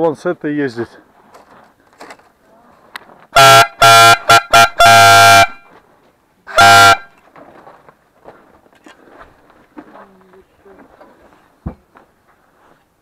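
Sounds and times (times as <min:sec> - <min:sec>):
toy horn honking: 0:03.4 - 0:05.7, 0:06.5 - 0:07.2.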